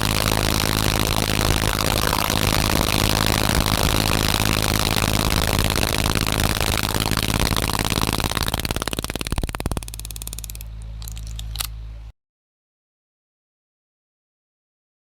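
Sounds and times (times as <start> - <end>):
clicks: 0.0 - 11.8
mechanical rattle: 0.0 - 11.8
steady low hum: 0.0 - 12.1.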